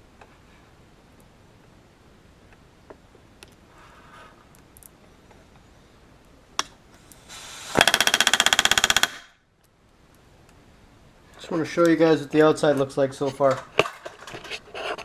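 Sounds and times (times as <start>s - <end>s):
air hiss: 7.0s - 9.0s.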